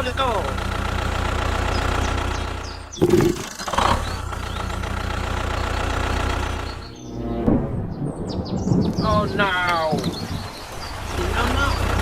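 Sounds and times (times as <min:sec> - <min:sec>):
heavy machine engine running: 0:00.0 - 0:07.0.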